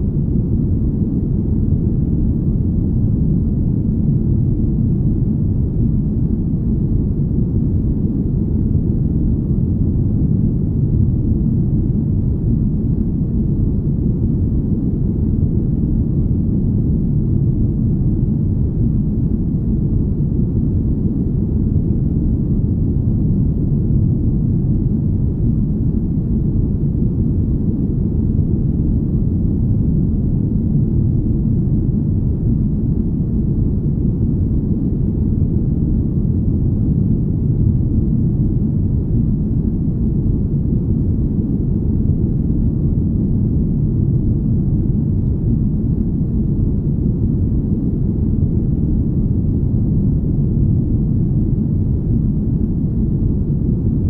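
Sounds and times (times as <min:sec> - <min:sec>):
deep smooth rumble: 0:00.0 - 0:54.0.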